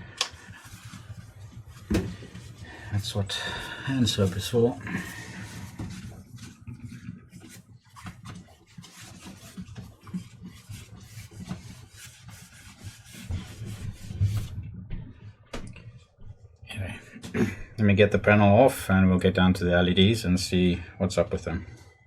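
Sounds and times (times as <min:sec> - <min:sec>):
cloth rubbing on plastic casing: 0:00.3 - 0:14.8.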